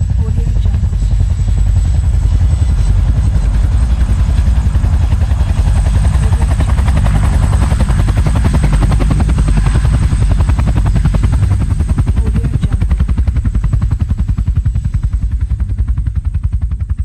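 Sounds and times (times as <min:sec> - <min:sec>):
low engine rumble: 0:00.0 - 0:13.6
helicopter rotor blades chopping: 0:00.0 - 0:17.0.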